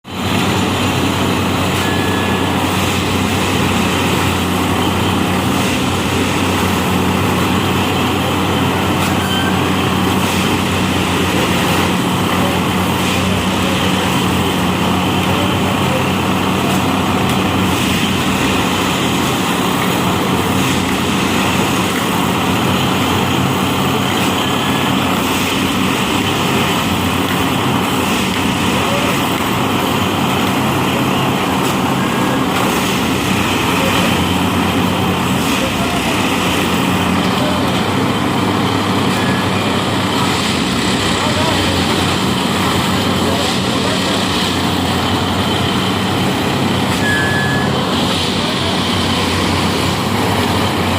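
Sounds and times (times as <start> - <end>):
track tamping machine droning: 0.1 - 50.9.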